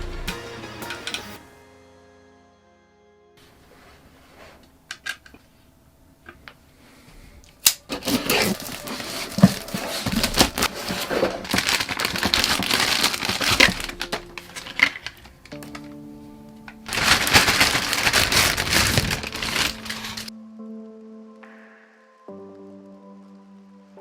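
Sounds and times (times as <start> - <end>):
packaging click: 7.6 - 16.0
packaging crinkling and rustling: 7.6 - 16.0, 16.6 - 20.3.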